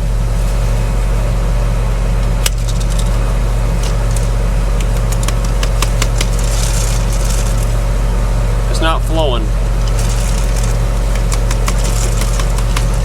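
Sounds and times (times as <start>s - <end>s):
tractor engine running: 0.0s - 13.0s
light clicks of corn handling: 3.8s - 7.8s, 9.8s - 13.0s.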